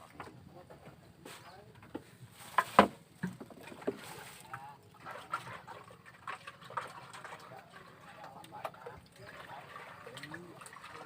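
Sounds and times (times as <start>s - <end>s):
knocks and thumps on raft: 1.8s - 7.3s.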